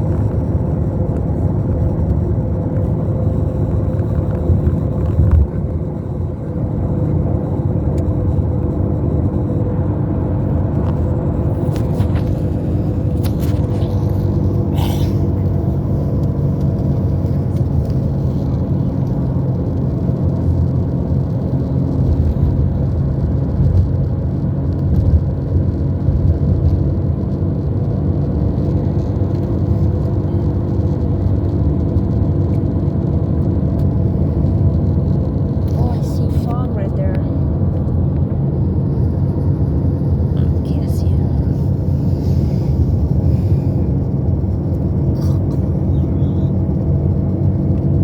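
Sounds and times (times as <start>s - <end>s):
low rumble: 0.0s - 48.0s
constant tonal hum: 35.6s - 48.0s.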